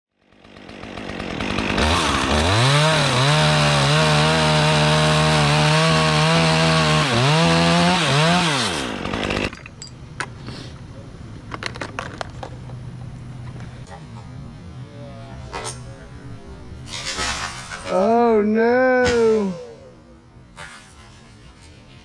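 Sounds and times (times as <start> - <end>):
chainsaw engine revving: 0.2 - 9.5.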